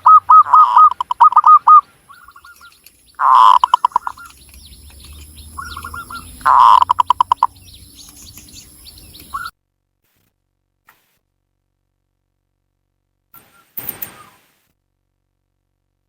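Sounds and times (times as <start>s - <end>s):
dove cooing: 0.0s - 9.5s
small birds chirping: 0.0s - 9.5s.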